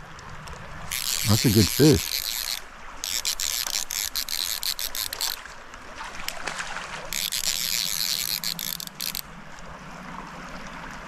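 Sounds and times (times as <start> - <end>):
fishing reel drag ratcheting: 0.9 - 5.4, 7.1 - 9.3.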